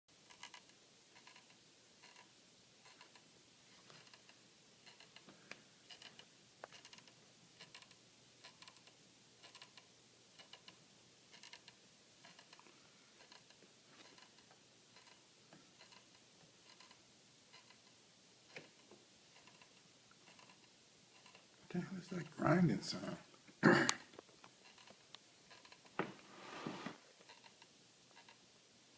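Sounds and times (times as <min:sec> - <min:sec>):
faint grinding clicks: 0:00.3 - 0:03.3, 0:03.9 - 0:05.3, 0:05.9 - 0:15.2, 0:15.8 - 0:21.5, 0:24.4 - 0:26.0, 0:27.2 - 0:28.4.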